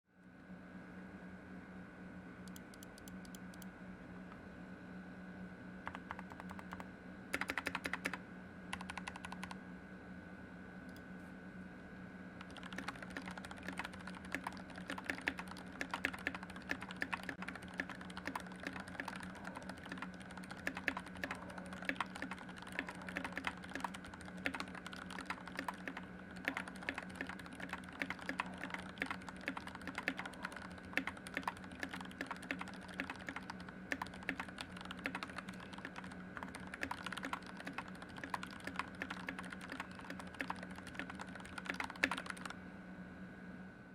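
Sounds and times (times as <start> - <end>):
steady low hum: 0.1 - 43.9
mechanical keyboard typing: 2.5 - 3.6, 5.8 - 9.6, 12.4 - 42.6.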